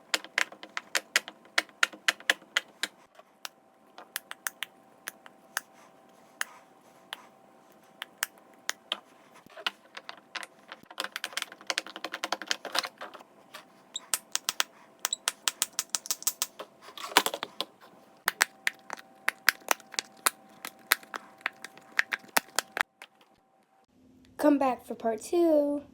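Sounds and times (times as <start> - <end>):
plastic fidget toys clicking: 0.0 - 5.7, 8.0 - 13.2, 14.0 - 17.7, 18.3 - 23.3.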